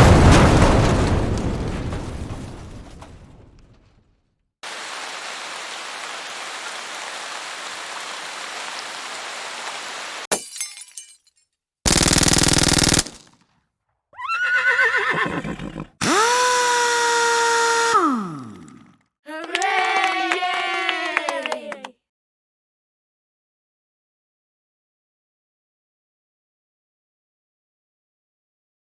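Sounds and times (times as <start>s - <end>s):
sharp crack: 11.9s - 13.4s
loud buzz: 16.0s - 18.4s.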